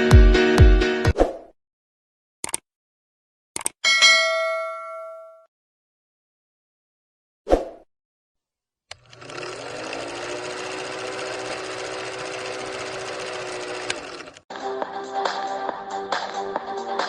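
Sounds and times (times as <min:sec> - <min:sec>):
small electric motor whining: 0:08.9 - 0:14.4.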